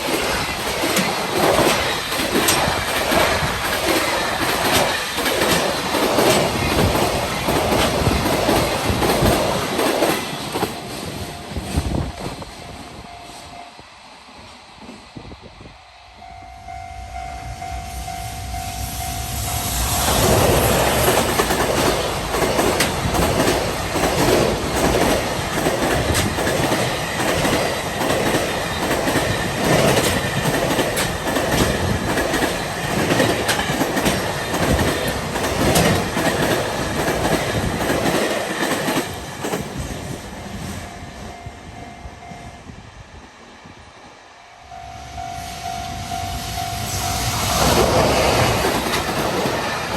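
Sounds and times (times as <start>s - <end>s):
freight train passing: 0.0s - 49.9s
level crossing warning bell: 16.0s - 20.0s, 40.5s - 43.1s, 44.4s - 47.8s
wheels clattering over rail joints: 20.3s - 40.1s.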